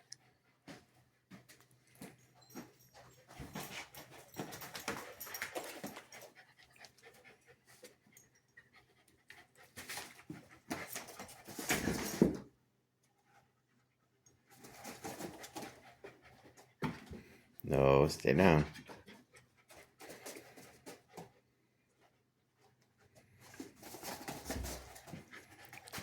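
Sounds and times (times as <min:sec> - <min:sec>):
dog panting: 0:02.4 - 0:11.6, 0:13.2 - 0:17.4, 0:18.8 - 0:26.0.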